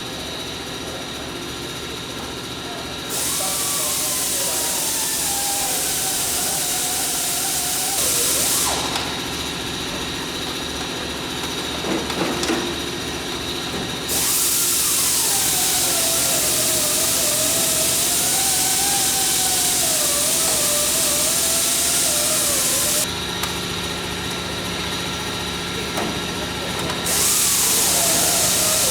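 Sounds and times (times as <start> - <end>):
loud hiss: 3.1 - 9.2, 14.1 - 23.1, 27.1 - 28.9
power tool motor whine: 3.1 - 9.6, 14.1 - 23.1, 27.0 - 28.9.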